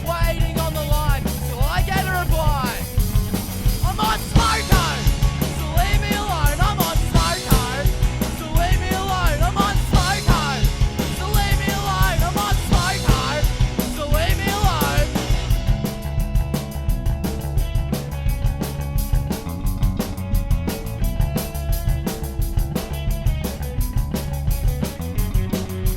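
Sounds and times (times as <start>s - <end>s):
fast punk rock music: 0.0s - 25.9s
person singing: 3.8s - 15.4s.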